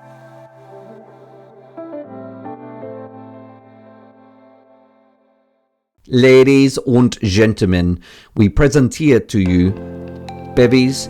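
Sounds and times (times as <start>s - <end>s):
held chord with bass note: 9.4s - 11.0s.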